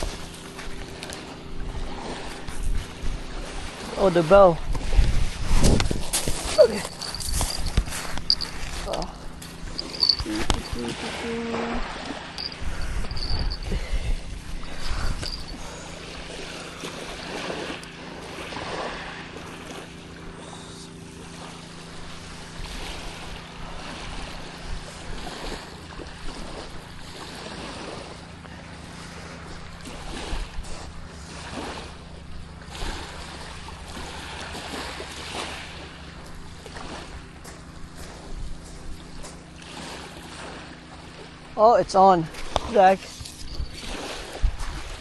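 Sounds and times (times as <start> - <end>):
water lapping and splashing: 0.0 - 45.0
low hum: 4.5 - 41.6
wind on microphone: 4.6 - 8.7, 9.6 - 15.8, 43.2 - 45.0.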